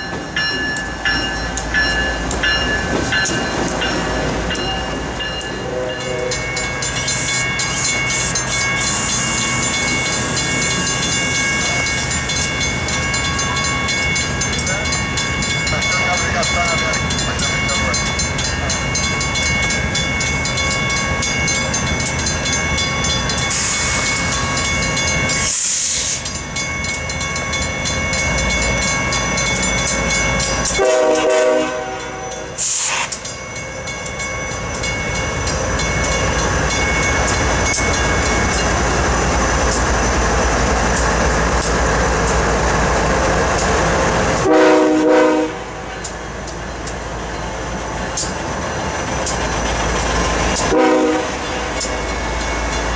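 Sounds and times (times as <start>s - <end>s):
diesel locomotives rumbling: 0.0s - 52.9s
locomotive horn blasts: 5.6s - 6.5s, 30.7s - 32.6s, 44.4s - 45.8s, 50.6s - 51.4s.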